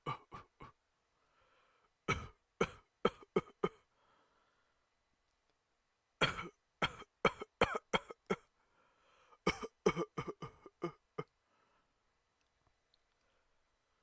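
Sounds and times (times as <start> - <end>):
person coughing: 0.0 - 0.8, 2.1 - 3.8, 6.2 - 8.5, 9.5 - 11.3.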